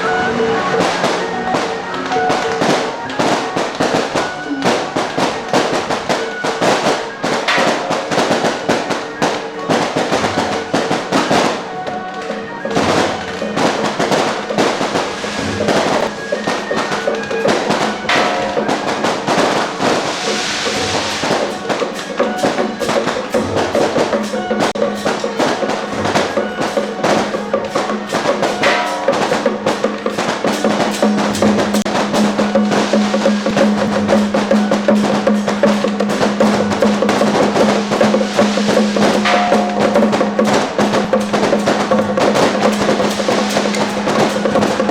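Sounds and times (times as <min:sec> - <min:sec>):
drums and percussion beat: 0:00.0 - 0:44.9.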